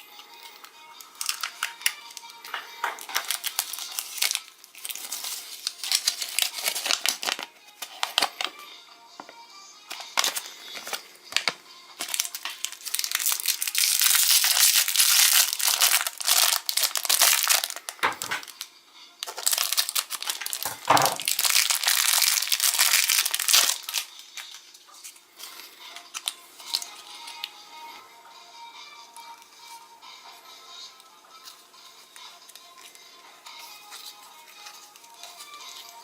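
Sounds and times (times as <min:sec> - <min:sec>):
wrapper crinkling: 0:01.0 - 0:08.5, 0:09.9 - 0:18.6, 0:19.2 - 0:27.5.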